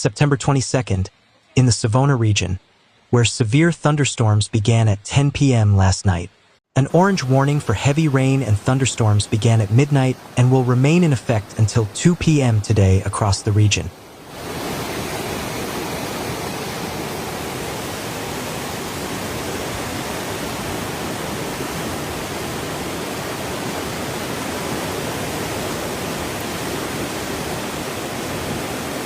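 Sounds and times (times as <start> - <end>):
water rushing: 6.8 - 29.0.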